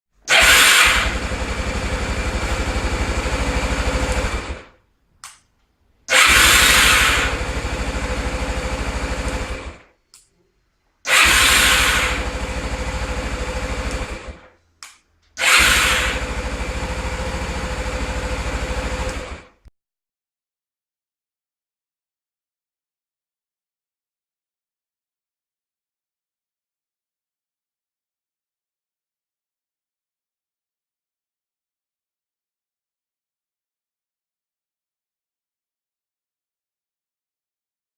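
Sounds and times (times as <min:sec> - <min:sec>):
motor mechanism whirring: 0:00.3 - 0:04.7, 0:06.1 - 0:09.9, 0:11.1 - 0:14.5, 0:15.4 - 0:19.6
short clicks: 0:05.2 - 0:07.1, 0:09.2 - 0:10.4, 0:13.6 - 0:16.2.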